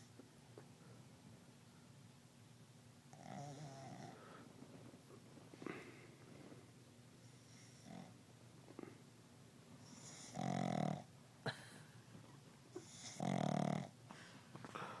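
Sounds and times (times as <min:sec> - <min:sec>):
dog snoring: 0:03.1 - 0:04.2, 0:07.3 - 0:09.0, 0:09.8 - 0:11.1, 0:12.8 - 0:14.0.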